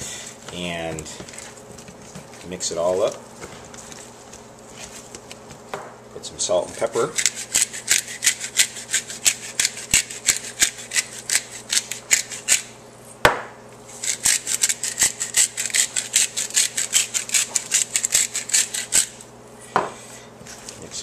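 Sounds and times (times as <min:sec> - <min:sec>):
gritty shaker strokes: 0:06.8 - 0:12.6, 0:13.9 - 0:19.2.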